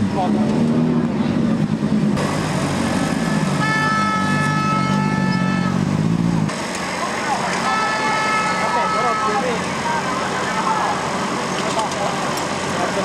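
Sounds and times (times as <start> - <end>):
loud engine-like drone: 0.0 - 13.0
horn held note: 3.2 - 5.8.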